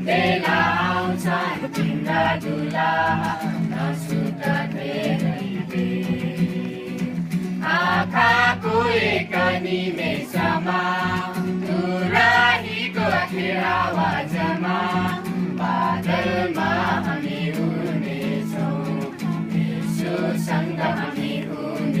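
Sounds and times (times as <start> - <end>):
voices singing with instrumental backing: 0.0 - 22.0.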